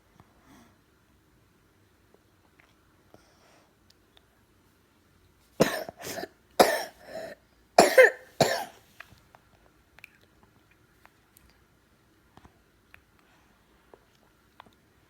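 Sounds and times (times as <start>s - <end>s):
person coughing: 5.6s - 8.8s.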